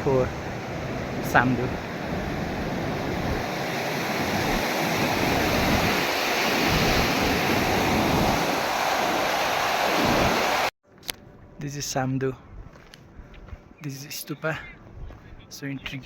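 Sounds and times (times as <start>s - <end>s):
wind buffeting microphone: 0.0s - 9.2s
river water rushing: 0.3s - 10.7s.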